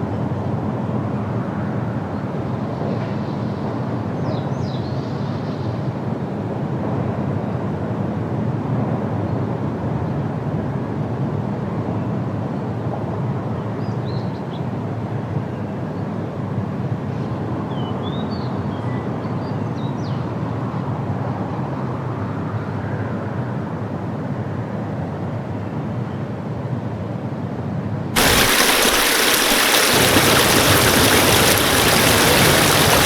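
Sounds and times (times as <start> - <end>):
low rushing outdoor ambience: 28.2 - 33.0.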